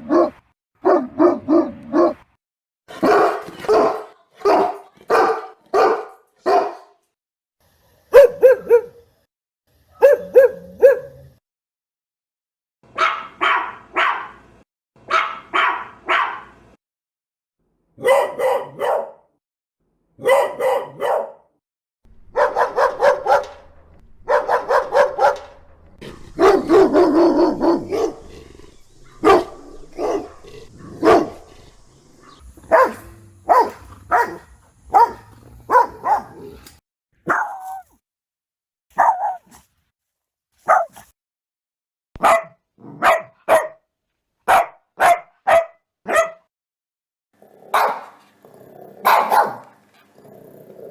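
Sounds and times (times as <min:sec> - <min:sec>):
dogs barking: 0:00.0 - 0:02.3, 0:02.9 - 0:06.9, 0:08.1 - 0:09.0, 0:10.0 - 0:11.3, 0:12.9 - 0:14.4, 0:15.0 - 0:16.6, 0:18.0 - 0:19.3, 0:20.2 - 0:21.5, 0:22.1 - 0:37.9, 0:38.9 - 0:39.6, 0:40.6 - 0:41.1, 0:42.2 - 0:43.8, 0:44.5 - 0:46.5, 0:47.7 - 0:48.2, 0:49.0 - 0:49.8.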